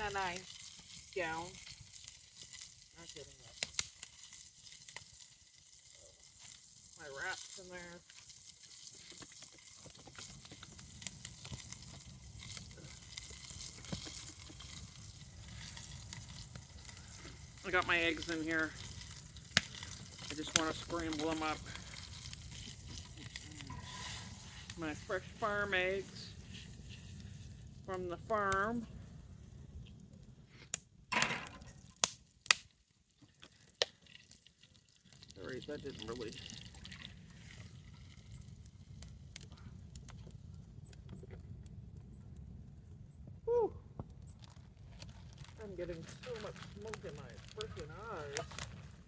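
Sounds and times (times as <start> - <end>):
butter sizzling in a pan: 0.0 - 40.9
sharp crackles and pops: 0.0 - 49.0
scraping rustle: 22.5 - 25.3.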